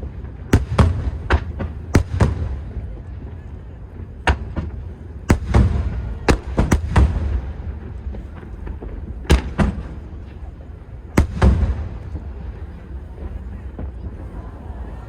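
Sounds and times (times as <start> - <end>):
steady low rumble: 0.0 - 15.0
firework shells bursting: 4.1 - 12.8.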